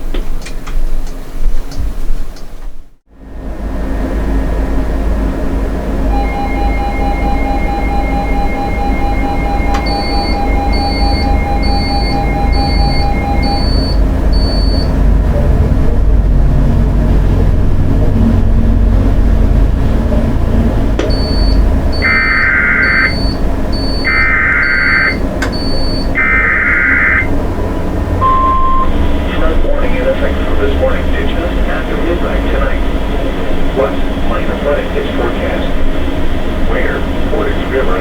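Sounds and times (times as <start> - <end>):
loud low rumble: 3.1 - 38.0
short high beeps: 6.1 - 14.9, 21.0 - 27.3, 28.2 - 28.9
steady electronic tone: 6.1 - 14.9, 21.0 - 29.5
harsh digital data bursts: 22.0 - 27.3.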